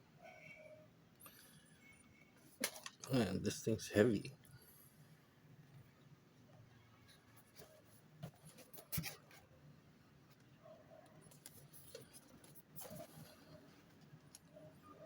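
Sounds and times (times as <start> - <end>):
cardboard rustling and scraping: 7.4 - 9.5, 11.3 - 14.1.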